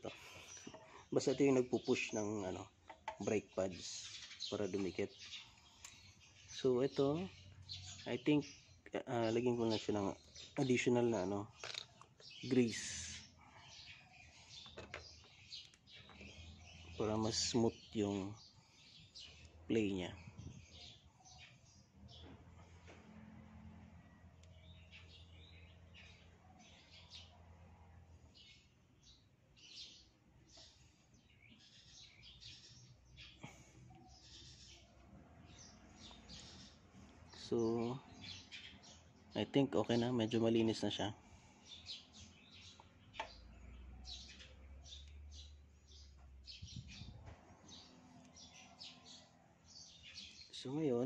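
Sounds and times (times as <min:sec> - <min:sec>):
faint bird chirps: 0:00.0 - 0:23.3
faint birds chirping: 0:00.0 - 0:51.0.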